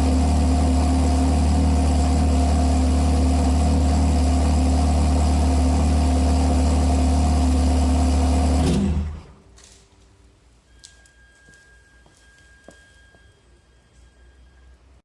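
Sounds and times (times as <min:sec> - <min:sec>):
car engine with deep exhaust: 0:00.0 - 0:09.5.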